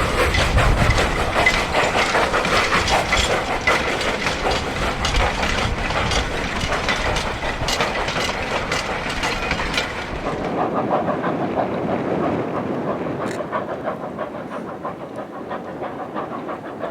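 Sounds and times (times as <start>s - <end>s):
steam hiss: 0.0s - 10.4s
low train rumble: 0.0s - 16.9s
train wheels clacking on rails: 0.0s - 16.9s.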